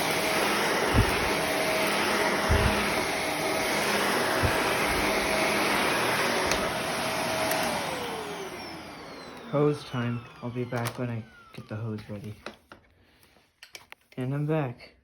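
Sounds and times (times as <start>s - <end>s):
vacuum cleaner roaring: 0.0s - 12.8s
low thumps: 2.4s - 3.3s.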